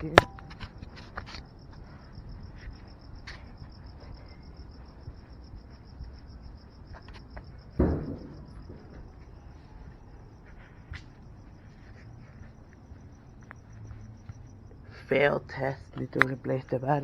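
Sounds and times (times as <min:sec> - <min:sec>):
crickets chirping: 0:00.0 - 0:17.0
loud thump: 0:07.8 - 0:09.1.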